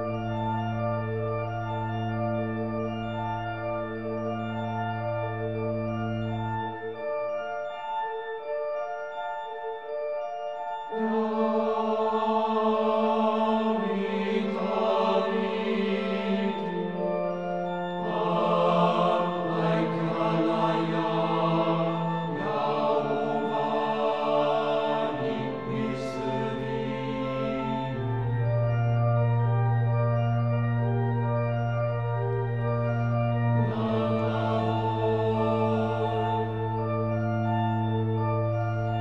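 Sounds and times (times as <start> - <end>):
organ chords: 0.0 - 39.0
choir-like voices: 11.0 - 28.2, 33.6 - 36.8.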